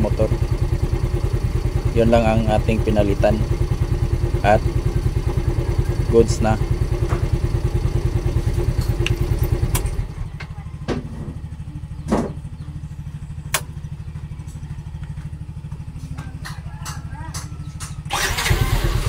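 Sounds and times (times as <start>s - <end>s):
motorcycle engine idling: 0.0s - 19.0s
sharp clicks: 13.5s - 13.8s.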